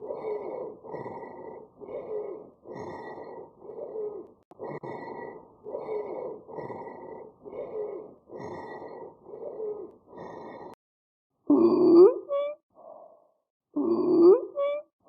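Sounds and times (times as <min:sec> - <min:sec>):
lung sounds through stethoscope: 0:00.0 - 0:10.8.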